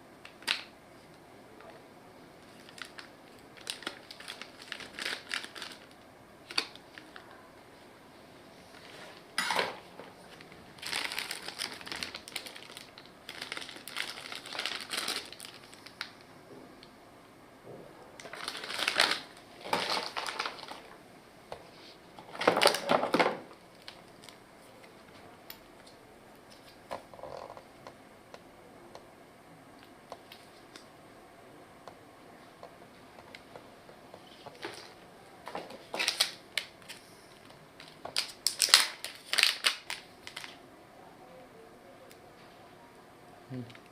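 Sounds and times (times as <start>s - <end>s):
packaging rustling and crinkling: 2.4s - 7.4s, 8.7s - 16.2s, 18.2s - 21.0s, 22.2s - 24.8s, 34.2s - 40.6s.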